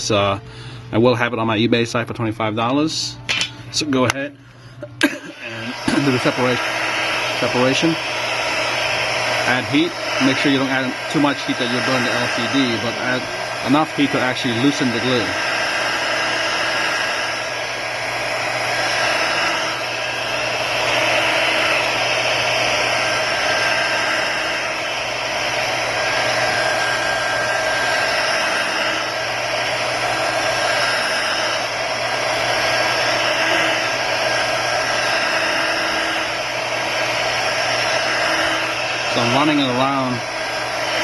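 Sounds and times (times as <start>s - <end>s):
heat gun blowing air: 4.8s - 41.0s.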